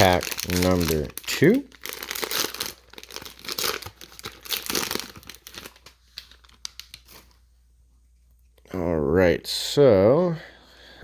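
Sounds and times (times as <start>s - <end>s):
plastic wrapper tearing and crinkling: 0.0s - 7.4s.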